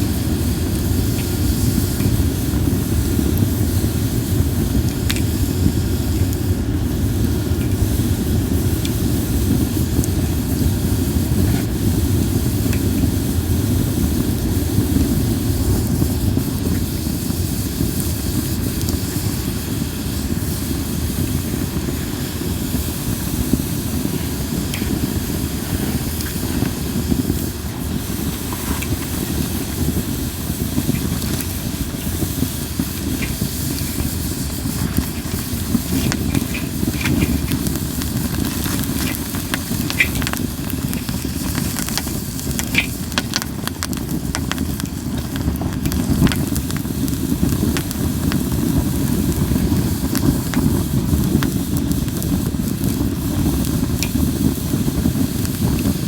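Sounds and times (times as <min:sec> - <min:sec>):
campfire flames burning: 0:00.0 - 0:56.0
faint fire crackles: 0:00.0 - 0:56.0.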